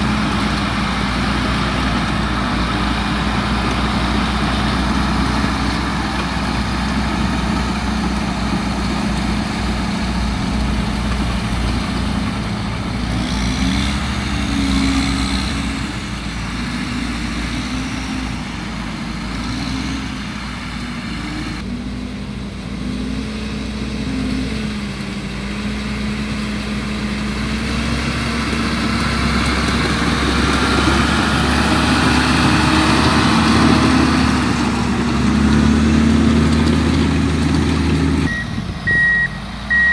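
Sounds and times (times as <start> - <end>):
tractor engine running: 0.0 - 39.9.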